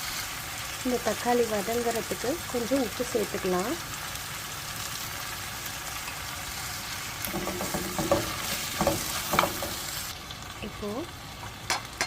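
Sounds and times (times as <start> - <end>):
onions sizzling in hot oil: 0.0 - 12.0
spatula scraping and knocking pan: 7.2 - 10.1.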